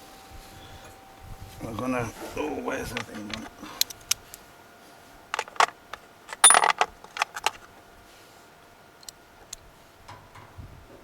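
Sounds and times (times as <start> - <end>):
small metal parts clinking: 5.3 - 7.7.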